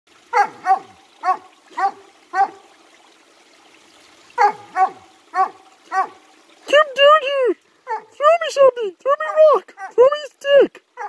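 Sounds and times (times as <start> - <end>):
dog barking: 0.3 - 2.6, 4.4 - 6.2, 7.9 - 8.2, 9.3 - 10.0.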